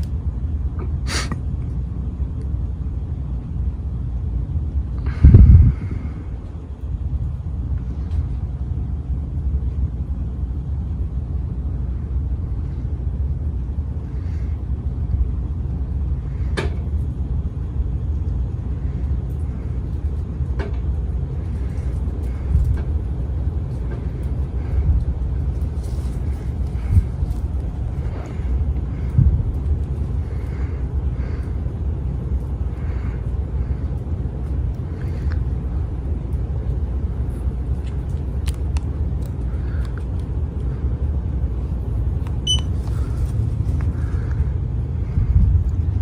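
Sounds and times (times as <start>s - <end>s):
fan draft buffeting microphone: 0.0s - 46.0s.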